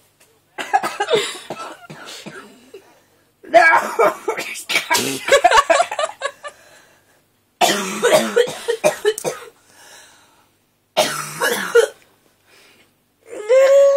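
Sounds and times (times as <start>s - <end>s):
person coughing: 0.6s - 3.0s, 3.6s - 5.7s, 7.6s - 9.5s, 11.0s - 12.0s.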